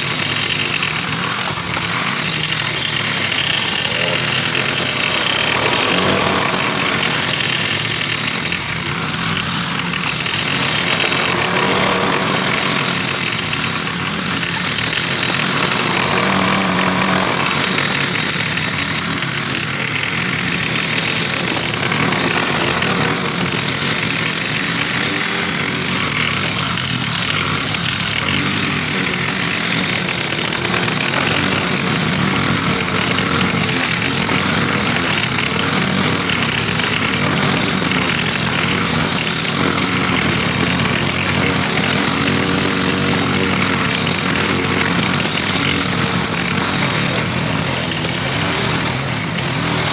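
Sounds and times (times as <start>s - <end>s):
lawn mower engine running: 0.0s - 49.9s.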